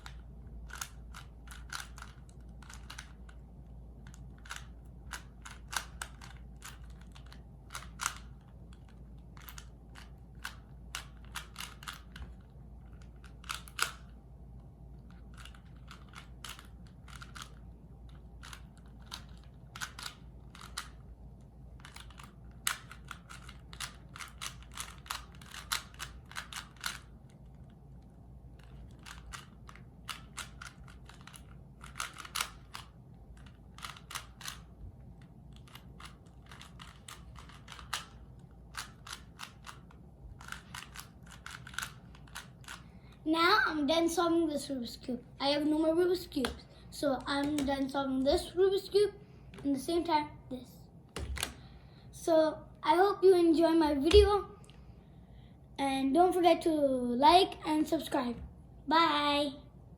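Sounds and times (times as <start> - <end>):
rubik's cube layers clicking: 0.0 - 3.4, 4.0 - 14.2, 15.0 - 21.1, 21.8 - 27.6, 28.6 - 34.7, 35.5 - 42.8.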